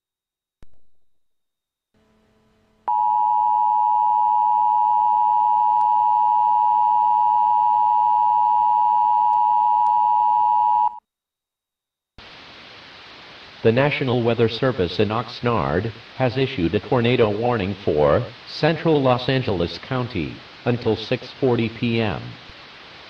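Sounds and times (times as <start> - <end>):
two-tone alert signal: 2.9 - 11.0.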